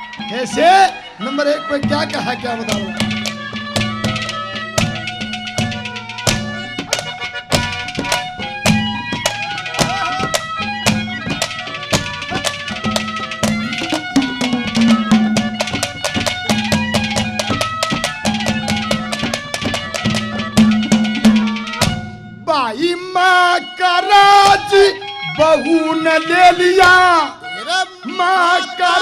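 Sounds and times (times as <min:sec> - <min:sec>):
melody instrument: 0:00.0 - 0:27.5
fast hand drum rhythm: 0:01.8 - 0:22.0.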